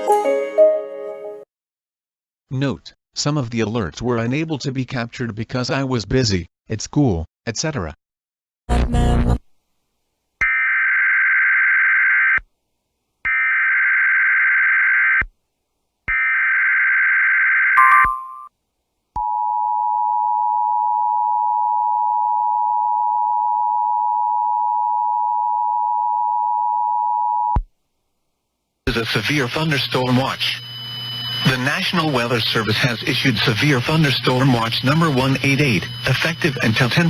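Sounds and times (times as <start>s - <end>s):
brief tone: 17.8s - 18.5s
two-tone attention signal: 17.8s - 18.5s, 29.3s - 37.0s
buzzy data bursts: 28.9s - 37.0s.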